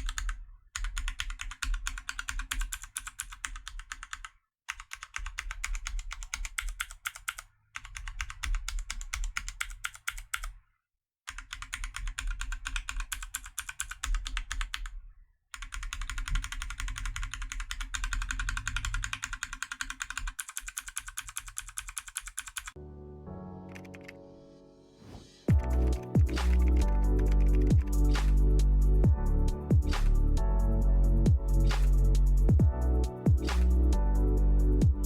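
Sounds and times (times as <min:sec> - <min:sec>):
fast typing on mechanical keyboard: 0:00.0 - 0:10.5, 0:11.3 - 0:15.0, 0:15.6 - 0:22.8, 0:23.7 - 0:24.2, 0:25.6 - 0:28.6
music: 0:22.8 - 0:35.0.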